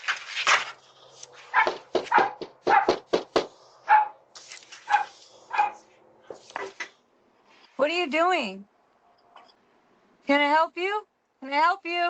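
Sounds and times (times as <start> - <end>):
dog barking: 1.5 - 3.1, 3.8 - 4.2, 4.8 - 5.9.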